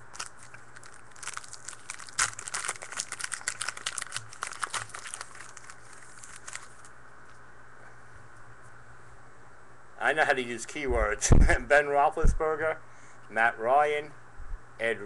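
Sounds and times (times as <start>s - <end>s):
foil wrapper tearing and crinkling: 0.0s - 6.9s.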